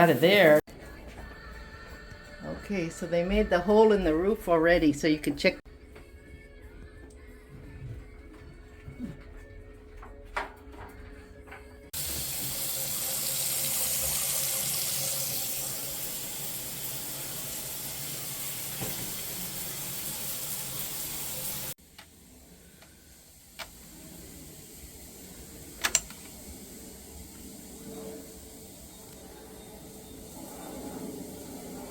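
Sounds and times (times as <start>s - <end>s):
shower water spraying: 12.0s - 21.8s, 22.8s - 31.9s.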